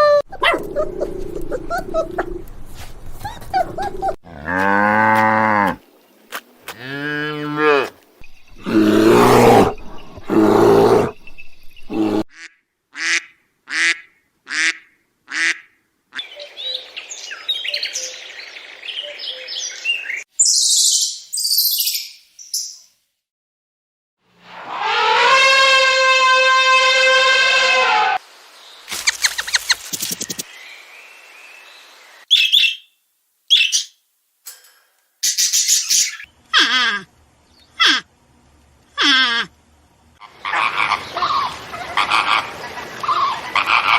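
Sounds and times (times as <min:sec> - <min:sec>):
animal chirping: 0:00.3 - 0:02.4
cattle mooing: 0:04.2 - 0:05.8, 0:06.8 - 0:07.9, 0:08.6 - 0:11.1
high shrill animal calls: 0:24.6 - 0:28.2, 0:35.5 - 0:37.1, 0:37.7 - 0:38.1.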